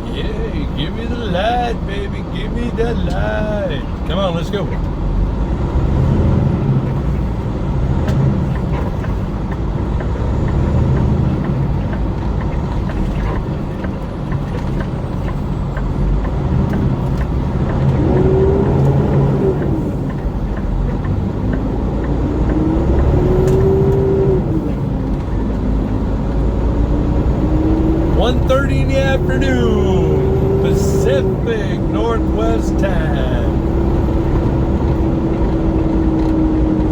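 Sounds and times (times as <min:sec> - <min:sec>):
vehicle engine and road noise: 0:00.0 - 0:36.9
engine whine: 0:22.2 - 0:36.9.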